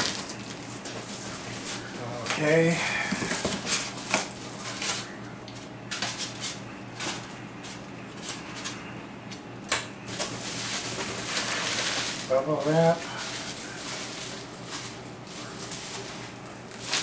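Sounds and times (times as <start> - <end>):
packing material rustling: 10.1 - 17.0.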